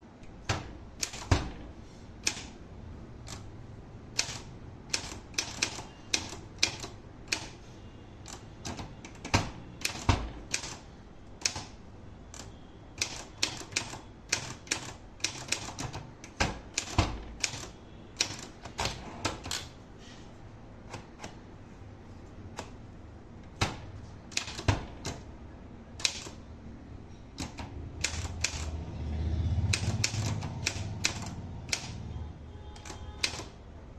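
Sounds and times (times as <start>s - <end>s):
typewriter key strikes: 0.4s - 1.6s, 2.2s - 2.5s, 4.2s - 7.6s, 8.2s - 10.8s, 12.4s - 19.7s, 23.5s - 25.3s, 26.0s - 26.4s, 27.4s - 28.7s, 29.7s - 32.0s, 32.8s - 33.6s.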